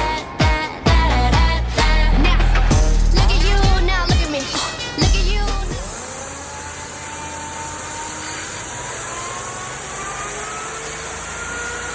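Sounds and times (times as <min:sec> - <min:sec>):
engine drone: 0:00.0 - 0:11.9
high-pressure water hiss: 0:05.6 - 0:11.9.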